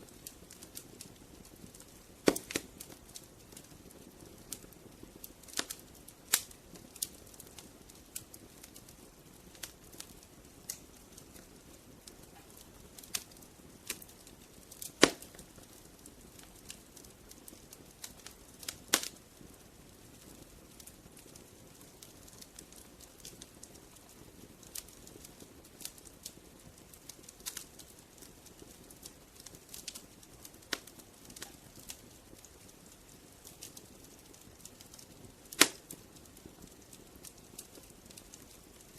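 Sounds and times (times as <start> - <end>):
low hiss of burning: 0.0 - 38.9
wood fire crackling: 0.0 - 38.9.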